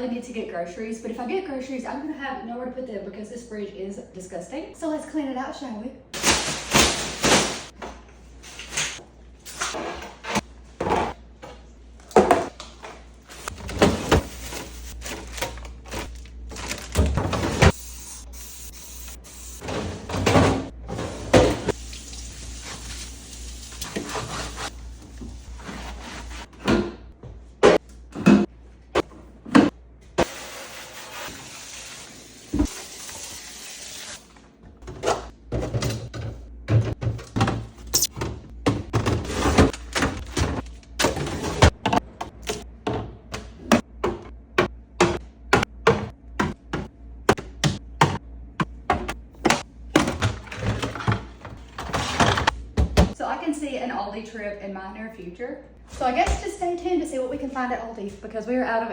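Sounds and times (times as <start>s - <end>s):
water running into sink: 21.5s - 24.1s, 30.3s - 34.2s.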